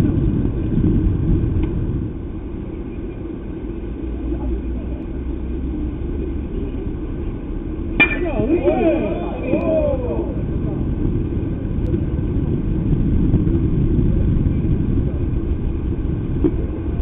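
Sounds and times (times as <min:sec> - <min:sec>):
low outdoor rumble: 0:00.0 - 0:17.0
faint indistinct voices: 0:02.9 - 0:12.2.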